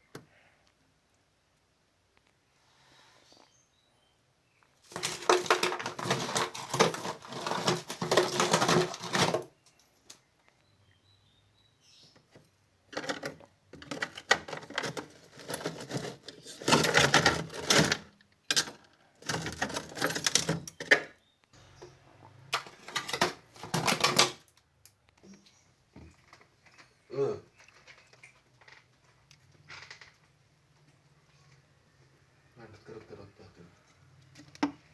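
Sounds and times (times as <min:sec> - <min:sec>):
ice being chipped and scraped: 0:04.9 - 0:09.4.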